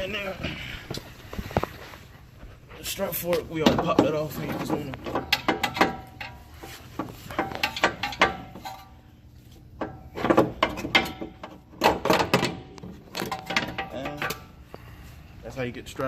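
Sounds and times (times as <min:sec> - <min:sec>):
metal clunks and knocks: 0:03.5 - 0:09.0, 0:09.7 - 0:14.6.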